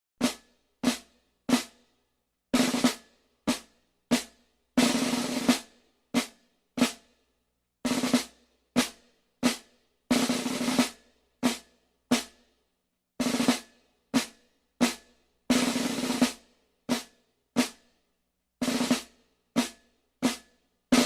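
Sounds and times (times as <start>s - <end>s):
snare drum strokes and rolls: 7.9s - 12.3s, 14.2s - 17.8s, 18.6s - 21.0s.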